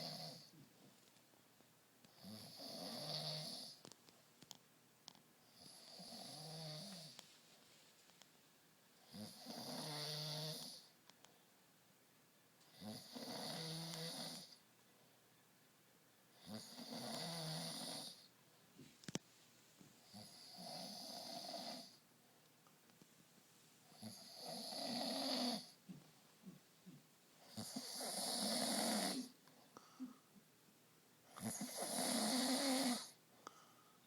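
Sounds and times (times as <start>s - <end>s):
snorting snore-like breaths: 0.0s - 0.5s, 9.0s - 10.9s, 12.7s - 14.6s, 16.4s - 18.3s, 20.1s - 22.0s, 24.0s - 25.8s, 27.4s - 29.4s, 31.3s - 33.2s.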